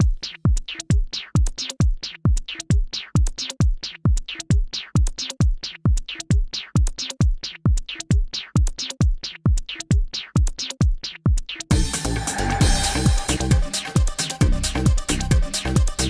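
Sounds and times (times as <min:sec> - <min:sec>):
drum machine kick: 0:00.0 - 0:16.0
falling synth sweeps: 0:11.8 - 0:15.2.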